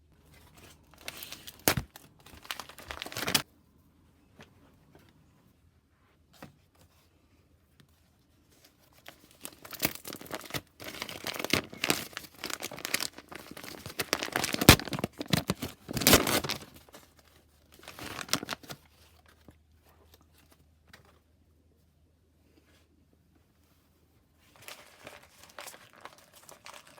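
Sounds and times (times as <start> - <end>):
packaging crinkled and torn: 0.4 - 3.5, 9.0 - 19.3, 24.6 - 26.9.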